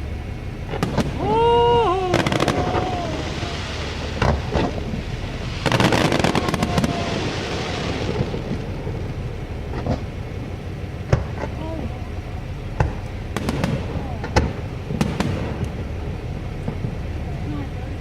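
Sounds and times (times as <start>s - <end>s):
crackling firework bursts: 0.6s - 11.6s, 12.4s - 17.6s
fireworks bangs: 0.7s - 11.8s, 12.6s - 17.3s.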